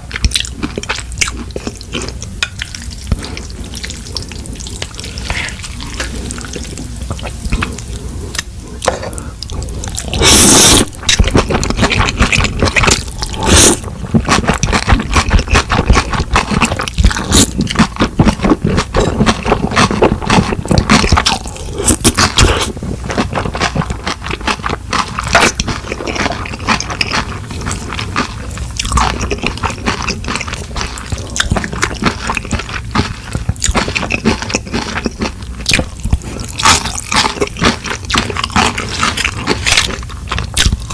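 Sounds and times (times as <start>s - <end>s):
wet chewing and smacking: 0.0s - 40.9s.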